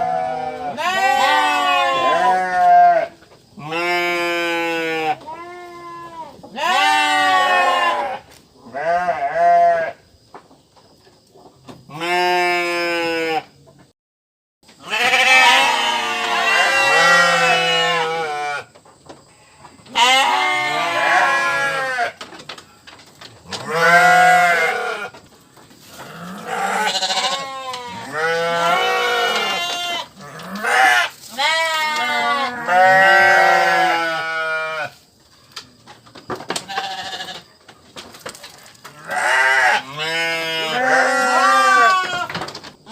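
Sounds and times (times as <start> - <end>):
sheep bleating: 0.0 - 10.0, 14.8 - 18.7, 19.4 - 22.2, 23.6 - 25.1, 26.0 - 35.0, 36.7 - 37.4, 39.0 - 42.3.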